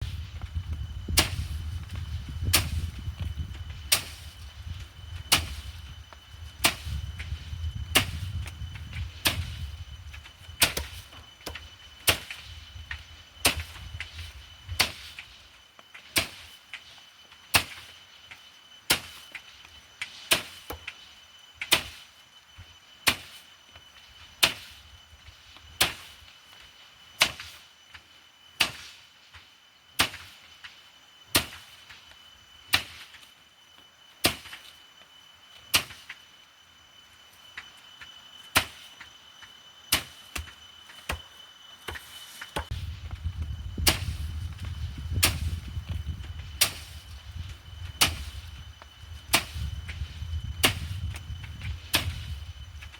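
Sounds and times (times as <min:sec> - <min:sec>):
low rumble: 0:42.7 - 0:48.0.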